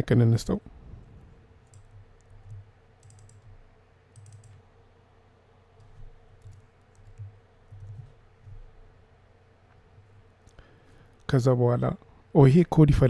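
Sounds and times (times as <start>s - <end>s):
faint keyboard typing: 1.0s - 4.7s, 5.7s - 9.0s.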